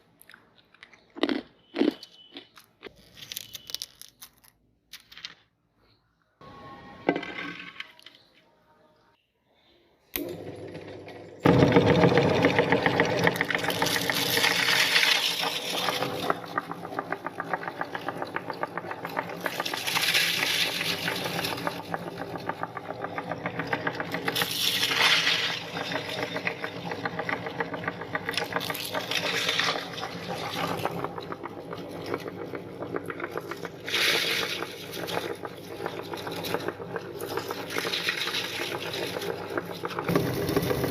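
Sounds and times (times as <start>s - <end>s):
cereal crunching rattle: 1.2s - 5.2s, 11.8s - 22.7s, 23.4s - 40.9s
meat grinder motor hum: 10.2s - 40.9s.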